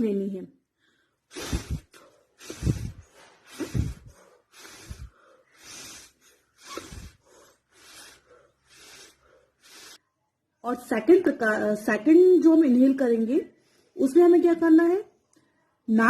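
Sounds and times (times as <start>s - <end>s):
woman breathing hard: 0.7s - 10.1s.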